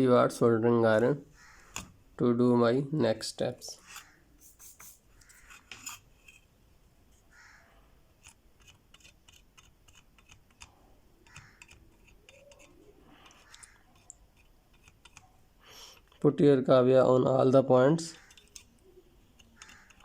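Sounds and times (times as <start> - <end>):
hand tools clicking and scraping: 3.8 - 6.5, 8.2 - 16.3, 18.1 - 20.0.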